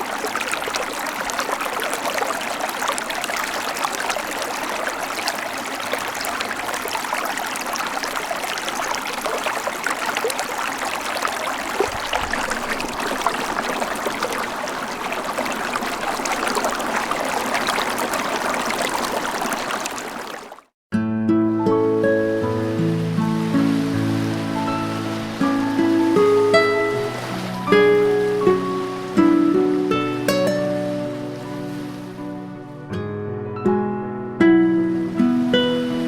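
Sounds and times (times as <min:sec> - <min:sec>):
running water ringtone: 0:00.0 - 0:20.6.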